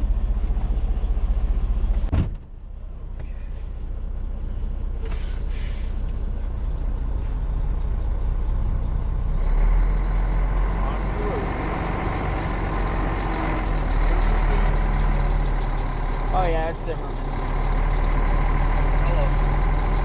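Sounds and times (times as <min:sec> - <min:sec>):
diesel truck engine idling: 0:00.0 - 0:20.0
short hiss: 0:05.0 - 0:06.1.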